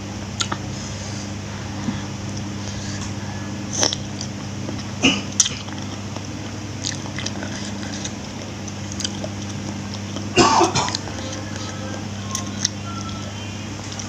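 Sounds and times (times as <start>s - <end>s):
steady low hum: 0.0s - 14.0s
person chewing food: 0.4s - 14.0s.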